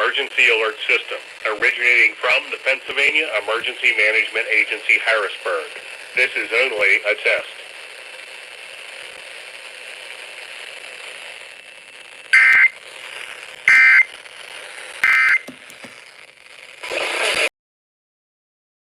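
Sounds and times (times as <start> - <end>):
radio hiss: 0.0 - 17.5
static burst: 0.0 - 17.5
two-tone data bursts: 12.3 - 12.8, 13.7 - 14.2, 15.0 - 15.6.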